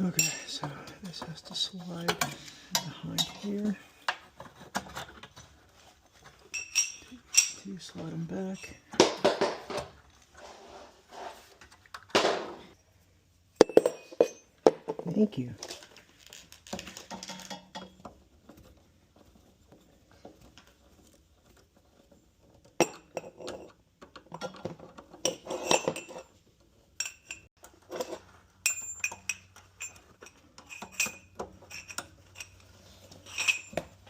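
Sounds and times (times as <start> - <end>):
metal tools clinking and knocking: 0.0 - 10.3, 13.6 - 20.7, 21.8 - 34.0.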